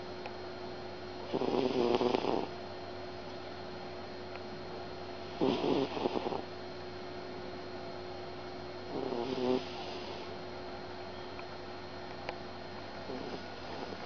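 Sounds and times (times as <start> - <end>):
cat snoring: 1.2 - 2.5, 5.2 - 6.5, 8.9 - 10.3, 13.1 - 14.0.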